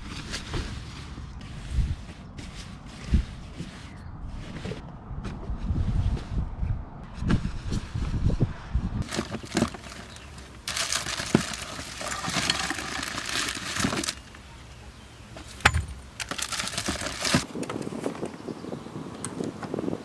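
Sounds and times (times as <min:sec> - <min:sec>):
rustling and crinkling handling: 0:09.0 - 0:18.5.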